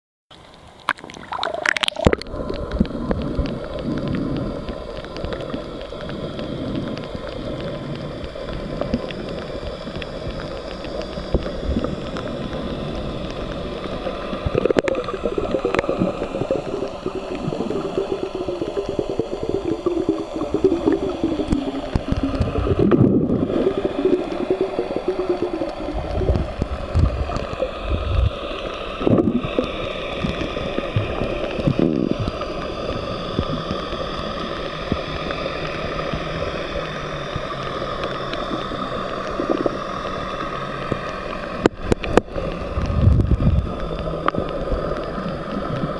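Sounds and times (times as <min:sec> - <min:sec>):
water gurgling and sloshing: 0:00.3 - 0:45.9
wavering low tone: 0:13.7 - 0:28.3.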